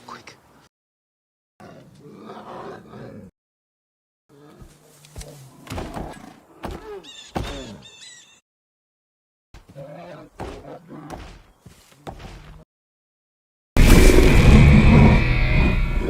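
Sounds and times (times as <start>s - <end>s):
bear growls: 1.6s - 3.3s, 4.3s - 7.8s, 9.7s - 11.4s, 14.0s - 16.0s
sharp thuds and knocks: 10.4s - 12.6s.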